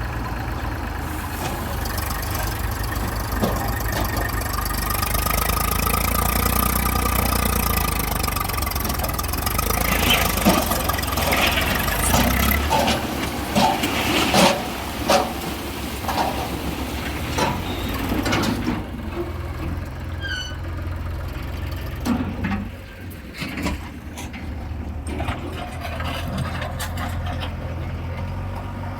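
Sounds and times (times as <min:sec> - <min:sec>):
diesel engine humming: 0:00.0 - 0:28.9
knocks and clanks: 0:01.4 - 0:07.9, 0:08.8 - 0:18.9.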